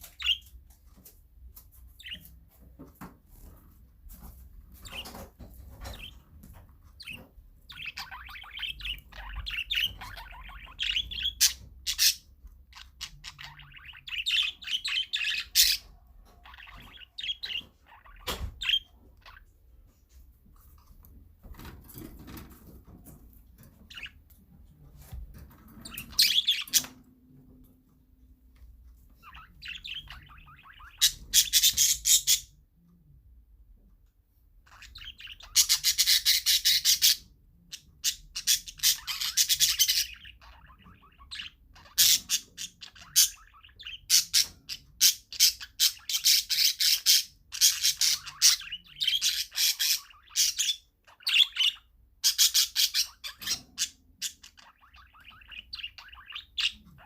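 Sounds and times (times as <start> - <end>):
parakeets chattering: 0.0 - 0.6, 2.0 - 2.3, 4.2 - 19.5, 23.6 - 24.2, 25.7 - 27.1, 29.2 - 32.6, 34.6 - 57.0.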